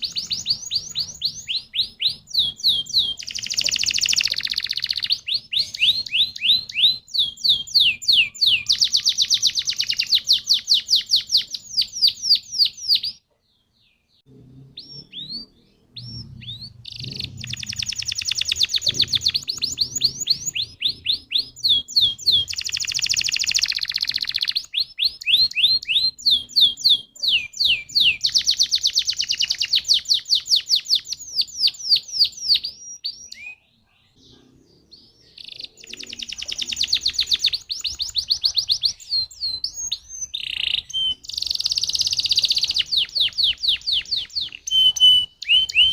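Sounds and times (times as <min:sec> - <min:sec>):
canary singing trills: 0:00.0 - 0:45.9.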